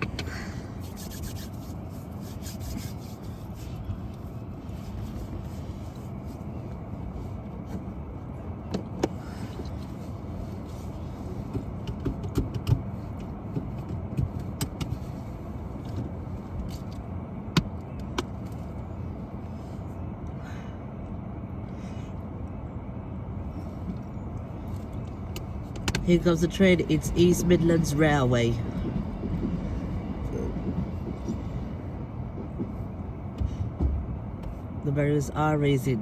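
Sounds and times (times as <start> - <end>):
low outdoor rumble: 0.0 - 36.0
sharp clicks and knocks: 11.5 - 15.0, 25.0 - 26.1, 28.7 - 31.5.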